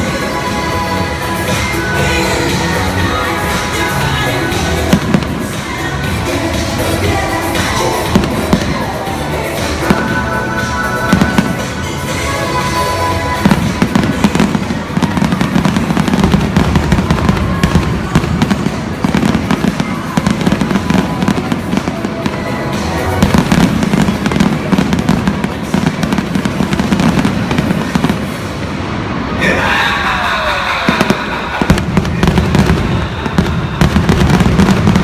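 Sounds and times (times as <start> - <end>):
fireworks bangs and crackles: 0.0 - 35.0.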